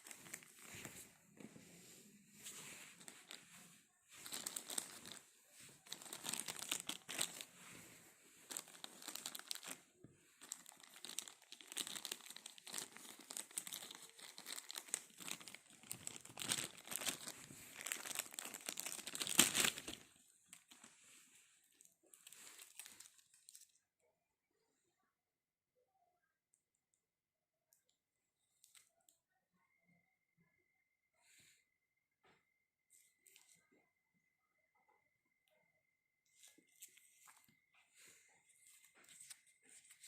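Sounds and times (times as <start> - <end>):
packaging crinkling: 0.0 - 0.9, 4.2 - 7.6, 8.4 - 21.0, 22.1 - 23.6.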